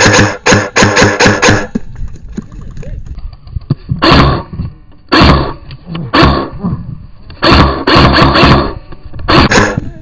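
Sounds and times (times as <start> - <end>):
airsoft gun firing bursts: 0.0 - 1.8, 4.0 - 4.5, 5.1 - 6.5, 7.4 - 9.8.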